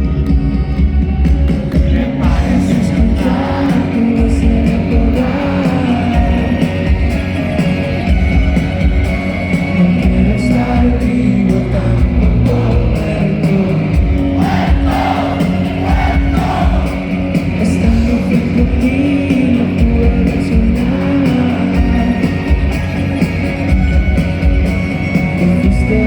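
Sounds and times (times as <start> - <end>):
rock band playing live: 0.0 - 26.0
voices singing: 1.8 - 7.6, 9.7 - 23.2.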